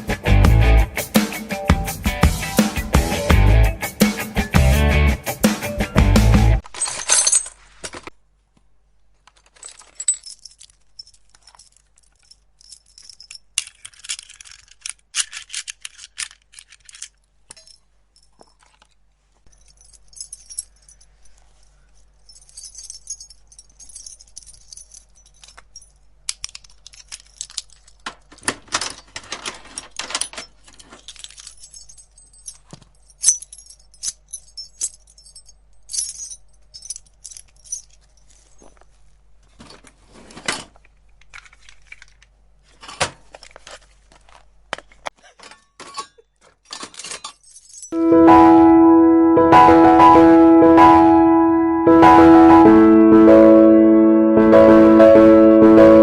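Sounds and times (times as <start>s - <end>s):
metal keys jangling: 6.8s - 7.6s, 9.4s - 18.8s, 19.5s - 38.8s, 45.8s - 48.0s.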